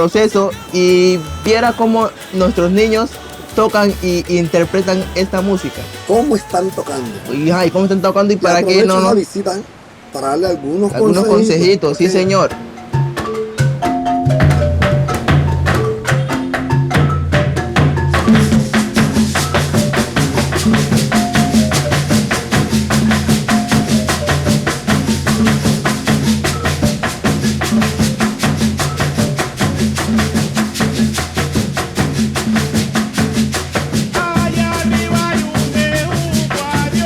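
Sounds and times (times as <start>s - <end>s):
rapid shaker strokes: 0.0s - 8.0s, 13.2s - 37.0s
drums: 13.1s - 37.0s.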